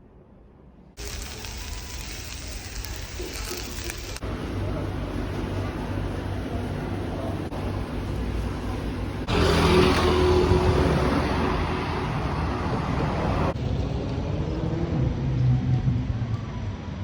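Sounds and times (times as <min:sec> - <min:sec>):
city street traffic: 0:01.0 - 0:17.0.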